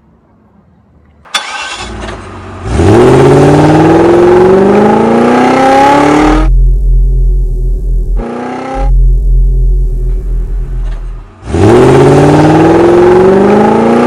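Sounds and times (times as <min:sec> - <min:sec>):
car engine accelerating hard: 0:01.4 - 0:14.0
low rumble: 0:05.7 - 0:12.6.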